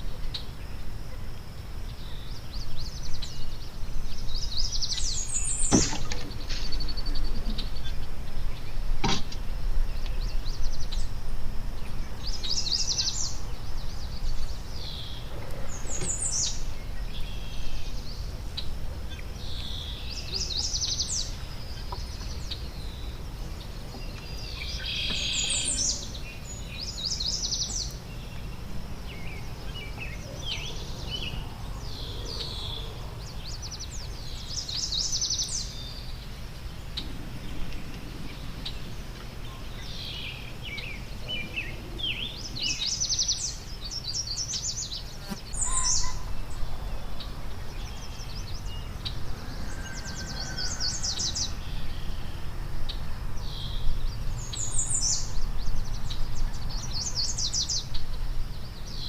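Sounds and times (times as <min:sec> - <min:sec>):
songbirds singing and chirping: 0:00.0 - 0:59.0.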